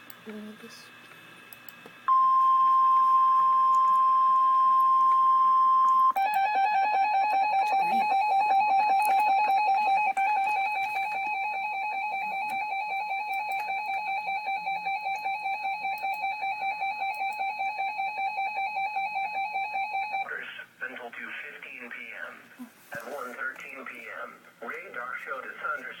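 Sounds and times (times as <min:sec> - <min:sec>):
two-tone electronic alarm: 0:02.1 - 0:20.2.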